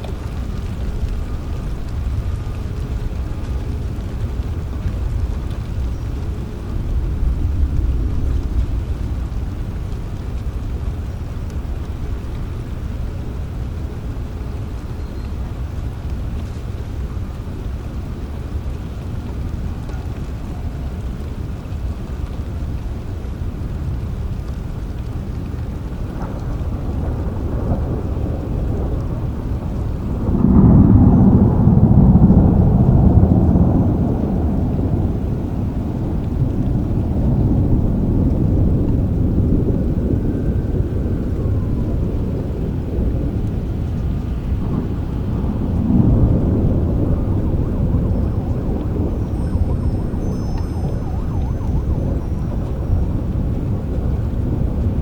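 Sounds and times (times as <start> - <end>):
rolling thunder: 0.0 - 22.2, 23.5 - 55.0
steady rain: 0.0 - 55.0.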